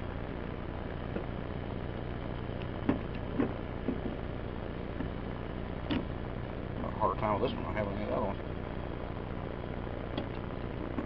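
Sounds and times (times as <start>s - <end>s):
background hum and hiss: 0.0s - 11.0s.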